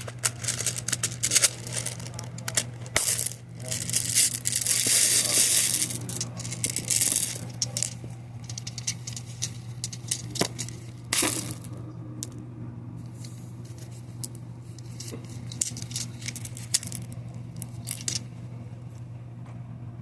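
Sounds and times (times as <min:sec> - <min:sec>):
squishy crinkling and crackling: 0:00.0 - 0:11.0.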